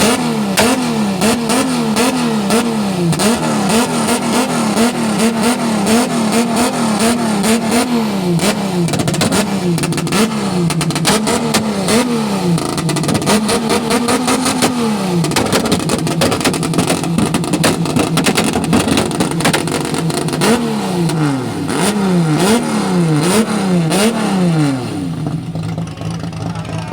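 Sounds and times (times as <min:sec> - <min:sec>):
car engine revving: 0:00.0 - 0:26.9
constant rattle: 0:08.8 - 0:11.6, 0:12.6 - 0:13.5, 0:14.6 - 0:20.4, 0:25.2 - 0:26.9.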